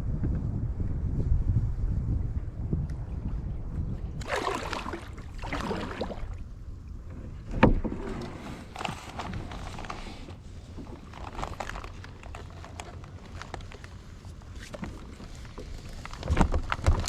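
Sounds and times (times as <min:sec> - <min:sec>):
wind rumble on microphone: 0:00.0 - 0:17.0
paddle strokes swishing in water: 0:03.0 - 0:06.5.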